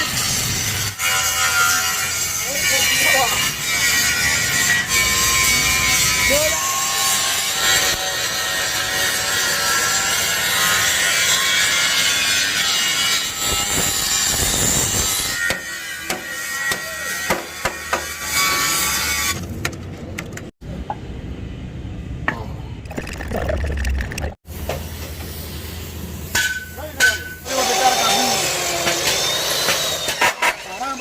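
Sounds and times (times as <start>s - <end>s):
tool grinding with harsh rasp: 0.0s - 19.4s
quiet workshop noise: 0.0s - 22.8s, 24.5s - 31.0s.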